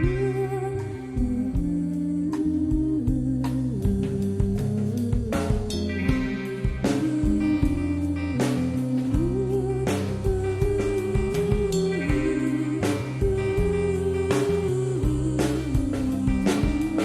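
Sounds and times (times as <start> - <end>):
instrumental rock song: 4.9 - 17.0.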